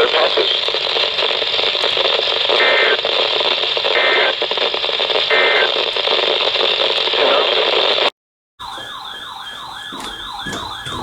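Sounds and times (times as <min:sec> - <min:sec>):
radio static hiss: 0:00.0 - 0:08.1.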